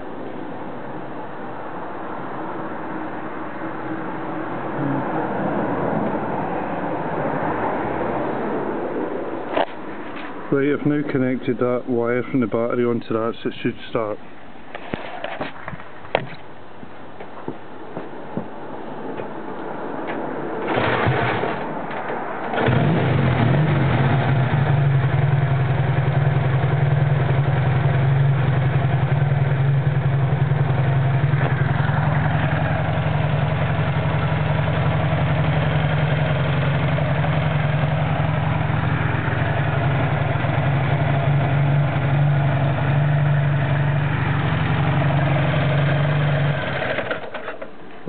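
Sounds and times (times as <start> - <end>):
motorcycle engine starting and idling: 20.6 - 47.8.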